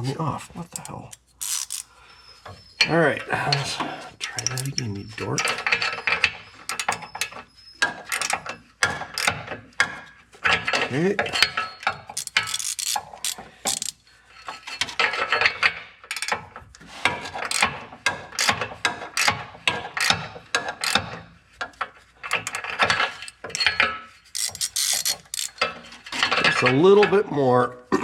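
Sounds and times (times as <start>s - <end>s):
ratchet wrench clicking: 0.8s - 1.9s, 8.1s - 8.4s, 12.1s - 14.0s, 16.1s - 16.4s, 17.5s - 17.7s, 18.4s - 18.6s, 20.8s - 21.1s, 22.4s - 25.7s.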